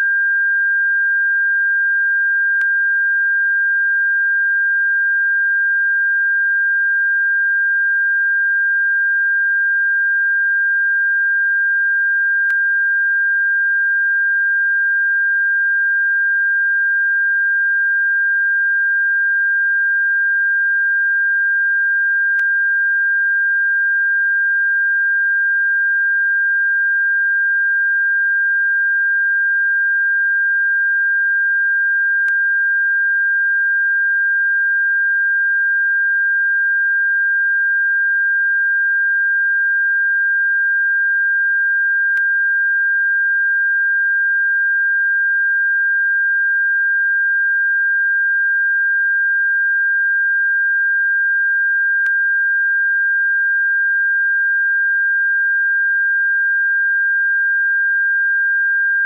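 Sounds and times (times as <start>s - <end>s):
high electronic sine tone: 0.0s - 1.7s, 26.9s - 59.0s.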